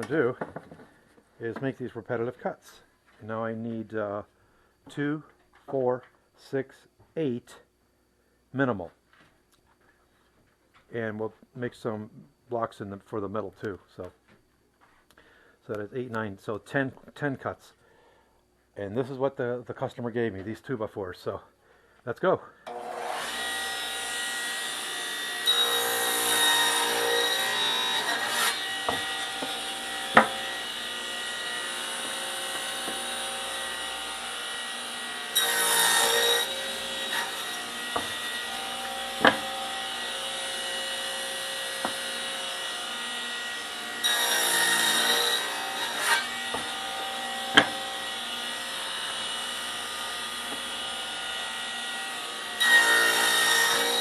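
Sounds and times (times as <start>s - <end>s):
table saw cutting wood: 0.0s - 0.2s, 22.7s - 54.0s
wood knocking: 28.9s - 30.5s, 37.9s - 38.2s, 39.2s - 39.6s, 47.5s - 47.8s.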